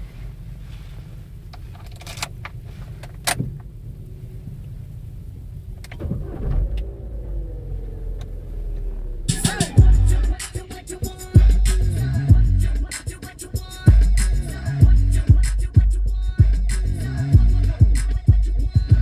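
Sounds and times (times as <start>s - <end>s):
car engine rumbling: 0.0s - 19.0s
engine clicks: 1.2s - 19.0s
music with scratching: 9.3s - 19.0s.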